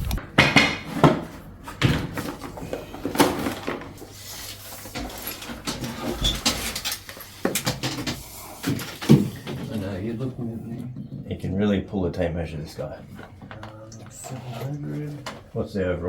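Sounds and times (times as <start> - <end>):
tools knocking and clunking: 0.0 - 4.0.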